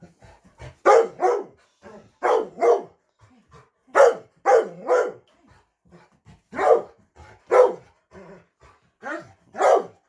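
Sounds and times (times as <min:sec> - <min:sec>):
dog barking: 0:00.8 - 0:01.6, 0:02.2 - 0:03.0, 0:03.9 - 0:05.3, 0:06.5 - 0:07.8, 0:09.0 - 0:10.0.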